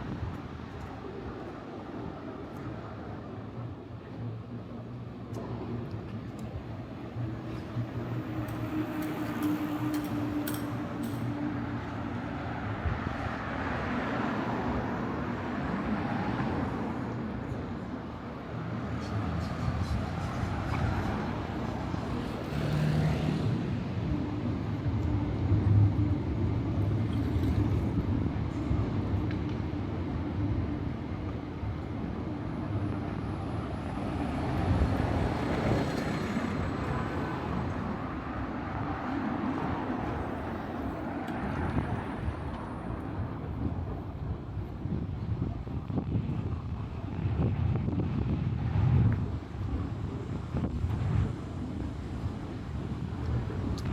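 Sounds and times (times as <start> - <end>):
vehicles passing: 5.4 - 53.9.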